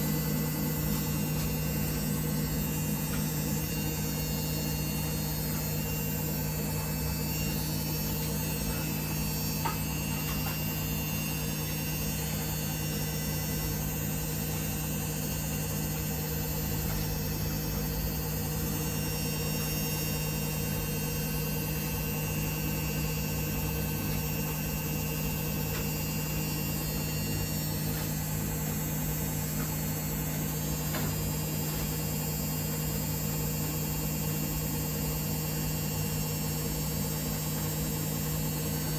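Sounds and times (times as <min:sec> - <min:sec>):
washing machine humming: 0:00.0 - 0:38.9.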